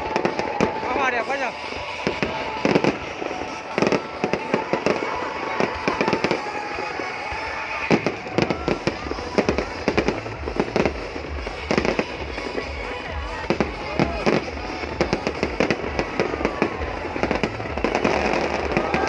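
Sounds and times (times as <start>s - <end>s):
fireworks bangs and crackles: 0.0s - 19.0s
low pulsing music beat: 7.9s - 19.0s.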